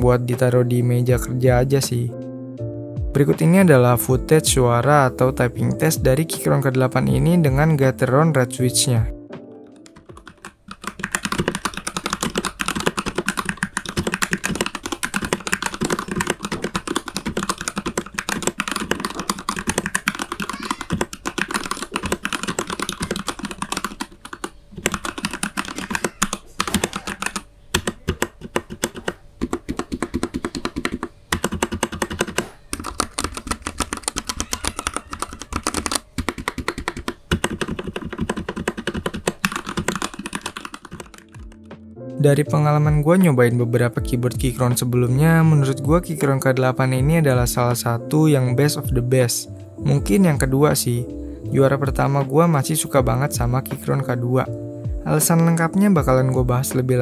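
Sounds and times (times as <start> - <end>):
mechanical keyboard typing: 9.7 - 41.7.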